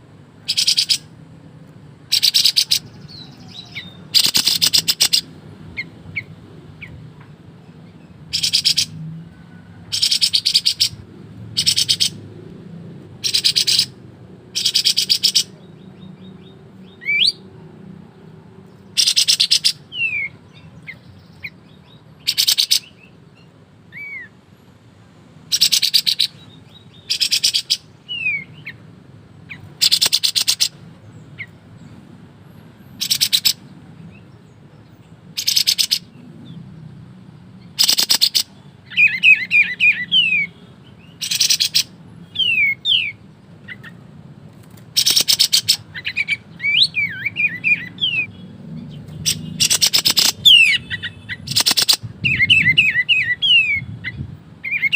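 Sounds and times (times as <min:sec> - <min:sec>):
bird twittering: 0:00.4 - 0:01.1, 0:02.1 - 0:07.0, 0:07.8 - 0:09.0, 0:09.8 - 0:12.2, 0:13.2 - 0:14.0, 0:14.6 - 0:17.4, 0:18.8 - 0:24.4, 0:25.5 - 0:28.8, 0:29.5 - 0:31.6, 0:33.0 - 0:34.4, 0:35.3 - 0:36.6, 0:37.6 - 0:44.0, 0:44.9 - 0:54.9
songbird rattling bursts: 0:04.1 - 0:05.2, 0:44.6 - 0:45.8, 0:49.2 - 0:50.4, 0:51.5 - 0:52.0.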